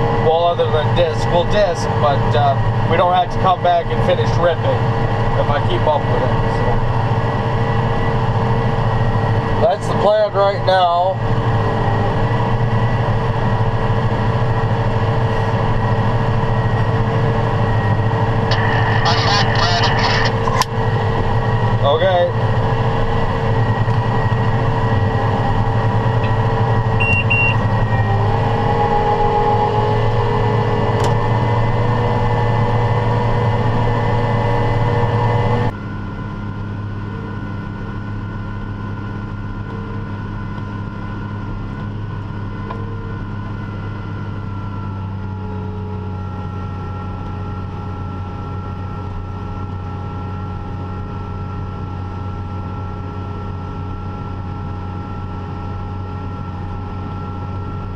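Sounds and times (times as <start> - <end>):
tractor engine running: 0.0 - 36.2
engine drone: 0.0 - 57.9.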